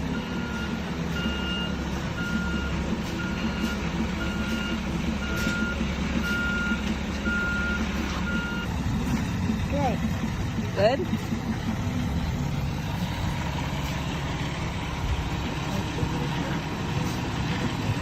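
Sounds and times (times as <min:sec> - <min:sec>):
truck reverse alarm beeping: 0:00.0 - 0:08.8
truck engine running: 0:00.0 - 0:18.0.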